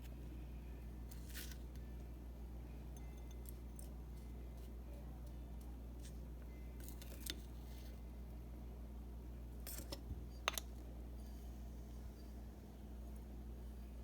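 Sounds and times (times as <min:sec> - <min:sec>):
steady low hum: 0:00.0 - 0:14.0
spoon scraping powder: 0:09.6 - 0:10.6.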